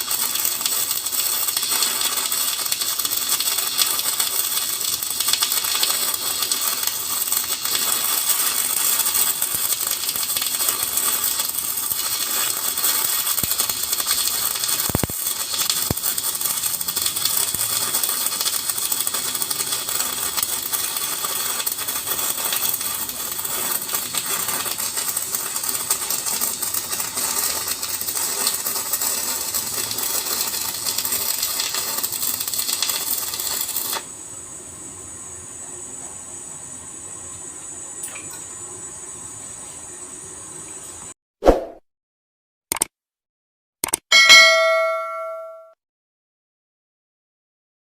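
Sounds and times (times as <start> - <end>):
welding arc crackling: 0.0 - 34.3.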